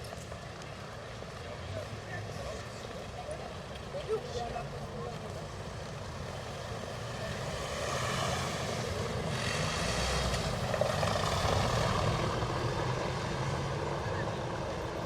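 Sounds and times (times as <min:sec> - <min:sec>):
vehicle passing close: 0:06.7 - 0:15.0.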